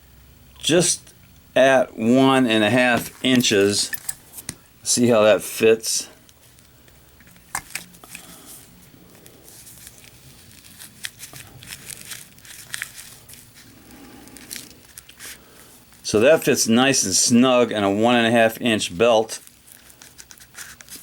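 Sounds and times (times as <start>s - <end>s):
nylon webbing rustling: 2.2s - 4.5s, 9.2s - 16.1s.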